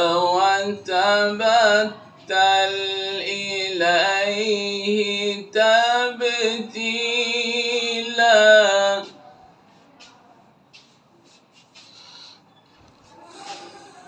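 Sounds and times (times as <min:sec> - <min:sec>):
man reciting melodically: 0:00.0 - 0:09.2.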